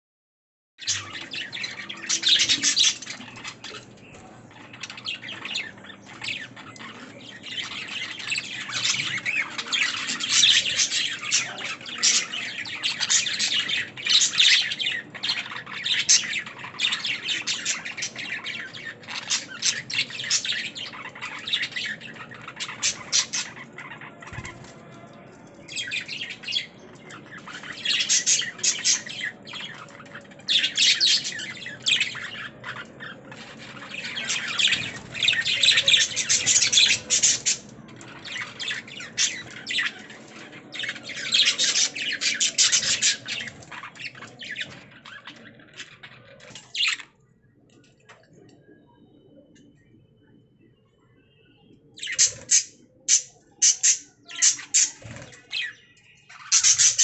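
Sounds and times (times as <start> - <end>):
budgerigars chirping: 27.3 - 40.1, 40.7 - 45.2, 52.0 - 57.0.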